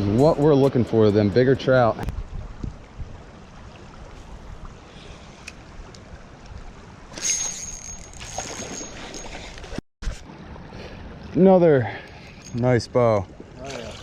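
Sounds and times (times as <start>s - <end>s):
creek water flowing: 0.0s - 14.0s.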